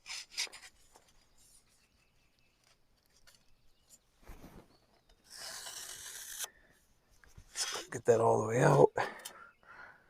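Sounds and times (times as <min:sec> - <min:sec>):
scratching lines on wood: 0:05.0 - 0:08.2.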